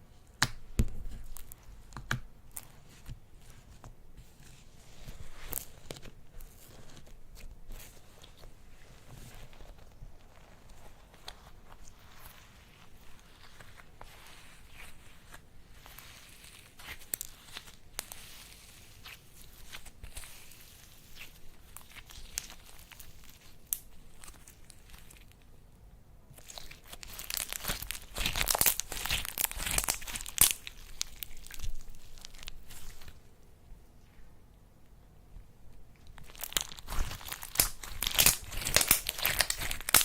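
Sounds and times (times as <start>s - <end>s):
slime crackling and clicking: 26.4s - 33.0s, 36.1s - 40.0s.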